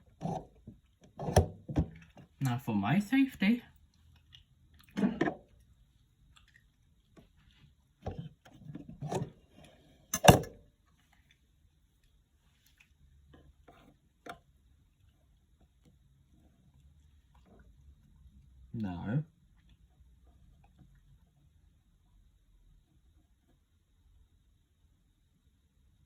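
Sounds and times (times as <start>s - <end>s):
handling knocks and clicks: 10.1s - 10.6s.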